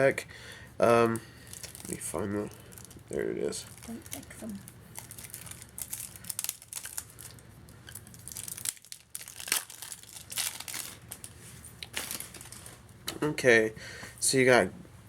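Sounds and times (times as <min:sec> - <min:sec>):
plastic packaging crinkling and tearing: 0:01.0 - 0:12.8.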